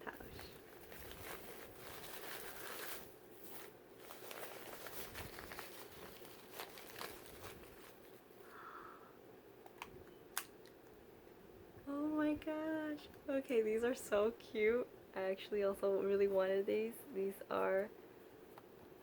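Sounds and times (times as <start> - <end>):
packaging crinkling: 0.0 - 8.3.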